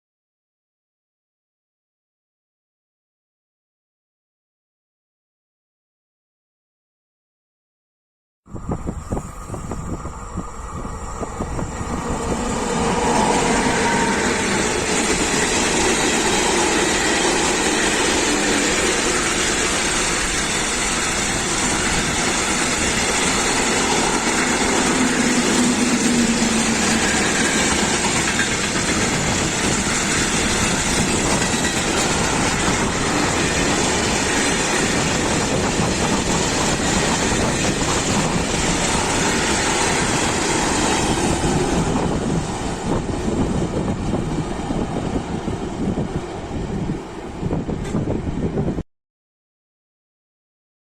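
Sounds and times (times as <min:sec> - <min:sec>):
freight train passing: 0:08.5 - 0:48.8.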